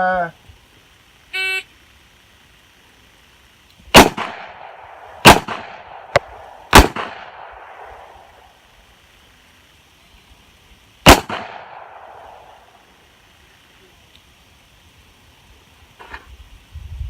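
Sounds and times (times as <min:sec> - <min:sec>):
revolver shots with echo: 0:05.2 - 0:07.9.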